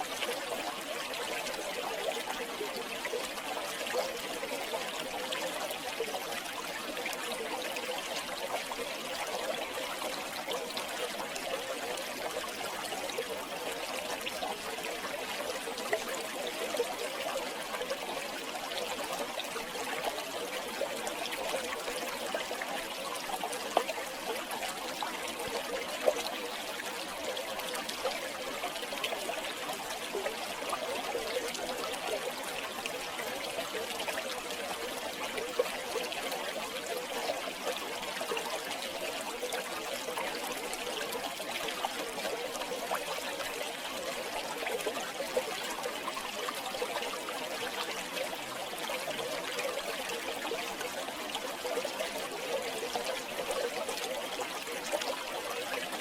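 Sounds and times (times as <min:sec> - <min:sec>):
river water flowing and trickling: 0:00.0 - 0:56.0.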